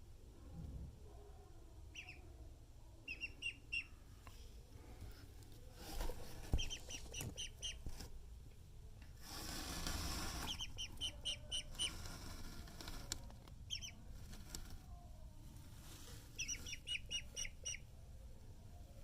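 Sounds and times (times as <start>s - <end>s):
duckling peeping: 1.9s - 2.2s, 3.0s - 4.0s, 5.9s - 8.1s, 10.0s - 13.0s, 13.6s - 14.7s, 16.2s - 17.9s.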